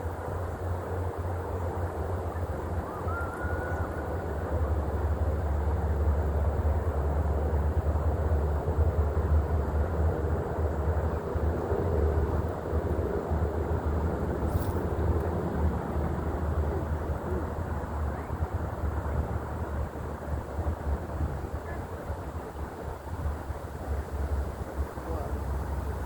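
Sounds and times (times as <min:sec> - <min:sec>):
rising whistle-like call: 0:02.8 - 0:04.1.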